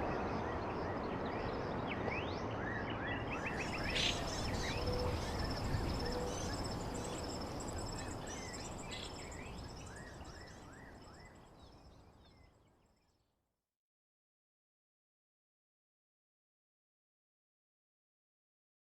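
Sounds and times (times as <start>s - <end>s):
high insect trill: 3.6s - 10.5s.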